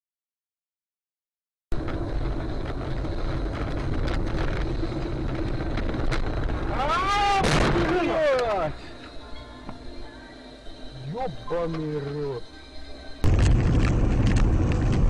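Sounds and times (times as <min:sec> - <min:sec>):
car engine and road noise: 0:01.7 - 0:15.0
wind on microphone: 0:01.8 - 0:06.8, 0:13.2 - 0:15.0.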